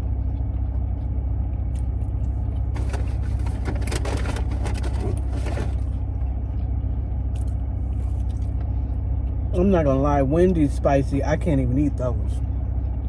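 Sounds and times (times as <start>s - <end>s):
car engine idling: 0.0s - 13.0s
crinkling and rustling: 2.3s - 6.3s.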